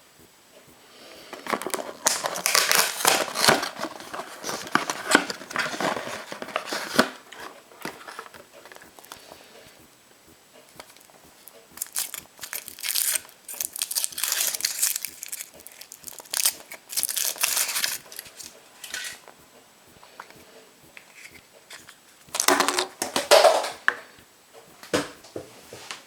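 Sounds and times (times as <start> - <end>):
foil wrapper crinkling: 1.2 - 9.5, 10.8 - 19.3, 21.0 - 23.8.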